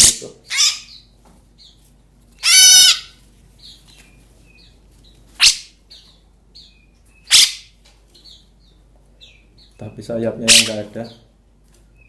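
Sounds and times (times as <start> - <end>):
harsh bird calls: 0.0 - 1.8, 2.4 - 11.3
faint high bird chirps: 2.4 - 11.2.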